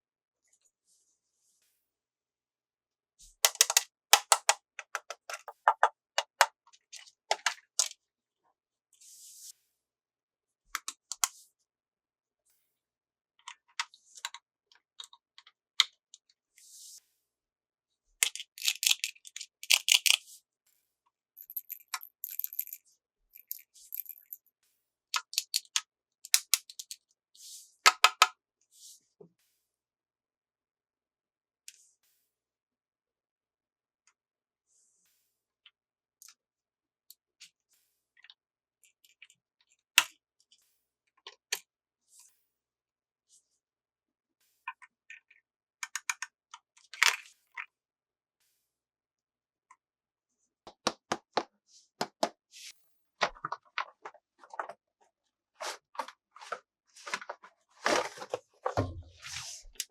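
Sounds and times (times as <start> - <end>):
plastic toy parts clicking: 3.5 - 6.5, 18.2 - 20.2, 21.4 - 22.8, 23.4 - 24.4, 25.2 - 27.0.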